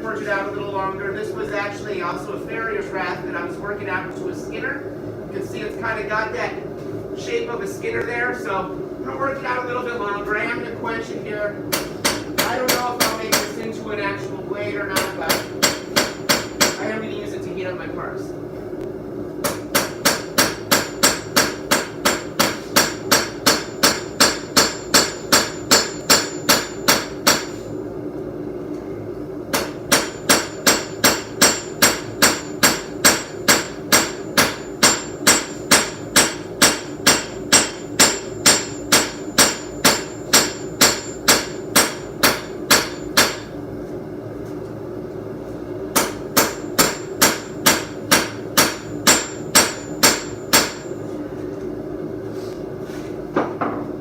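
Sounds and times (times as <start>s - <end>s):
hammer ringing on anvil: 19.8s - 27.6s, 29.6s - 43.5s, 46.0s - 50.9s.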